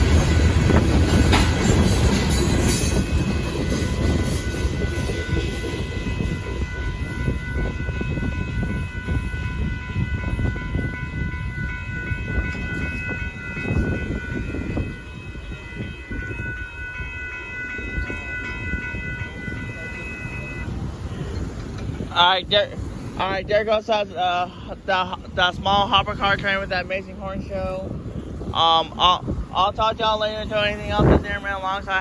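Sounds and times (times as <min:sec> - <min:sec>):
train wheels rumbling on rail: 0:00.0 - 0:32.0
faint steady ringing tone: 0:10.1 - 0:21.5.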